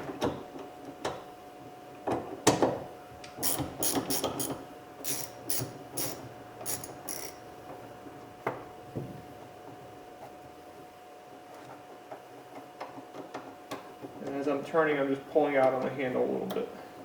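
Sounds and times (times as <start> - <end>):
socket ratchet clicking: 3.4 - 7.4.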